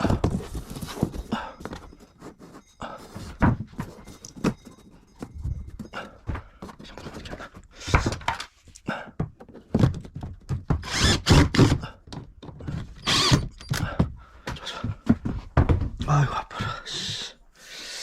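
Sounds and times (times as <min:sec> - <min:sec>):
wooden thunks and knocks: 0:00.0 - 0:02.0, 0:03.2 - 0:08.5, 0:09.1 - 0:11.0, 0:11.6 - 0:16.8.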